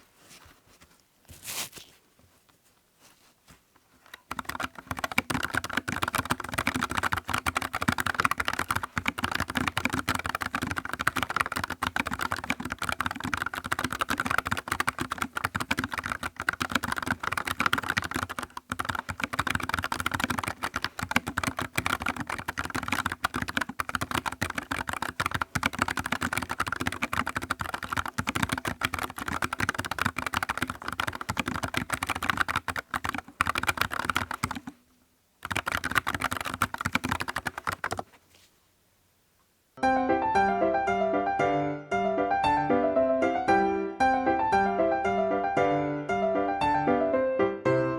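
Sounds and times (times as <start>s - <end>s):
fast typing on mechanical keyboard: 4.1s - 34.8s, 35.4s - 38.1s.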